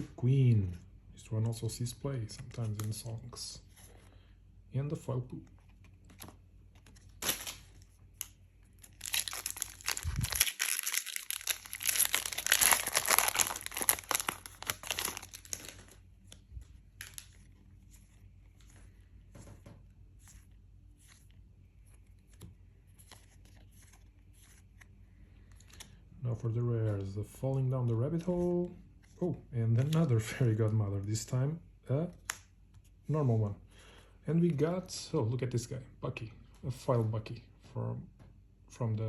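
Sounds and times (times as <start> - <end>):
wrapper tearing and crinkling: 7.0 - 16.0, 17.0 - 17.4.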